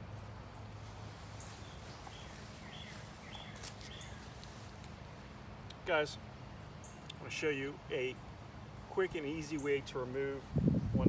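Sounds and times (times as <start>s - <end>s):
faint bird chirps: 1.3s - 4.4s.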